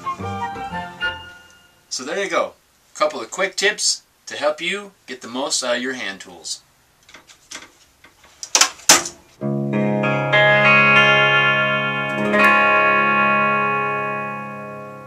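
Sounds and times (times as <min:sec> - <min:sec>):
distorted electric guitar chords: 0:09.4 - 0:15.0.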